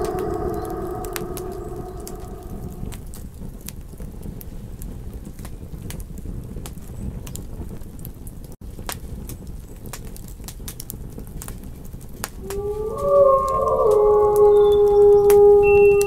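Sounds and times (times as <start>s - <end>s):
wolf howl: 0.0s - 3.0s, 12.4s - 16.0s
low rumble: 0.0s - 3.1s, 12.4s - 16.0s
campfire crackling and popping: 2.1s - 13.0s.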